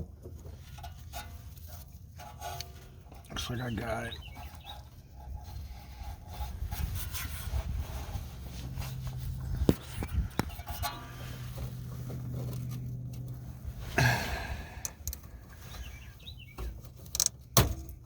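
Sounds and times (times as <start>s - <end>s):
hands and tools rubbing: 4.3s - 14.0s.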